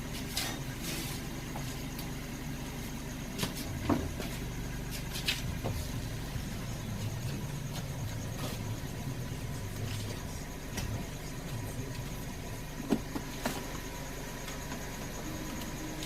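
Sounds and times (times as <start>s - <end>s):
car engine idling: 0.0s - 16.0s.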